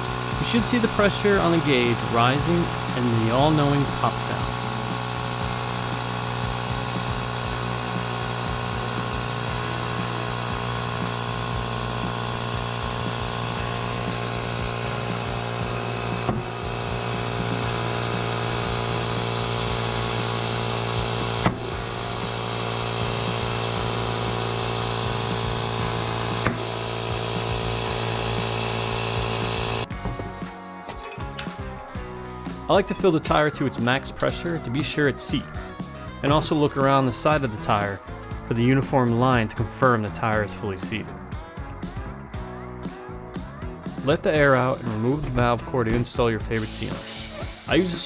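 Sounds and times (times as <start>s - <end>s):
air pump motor hum: 0.0s - 29.9s, 46.5s - 48.0s.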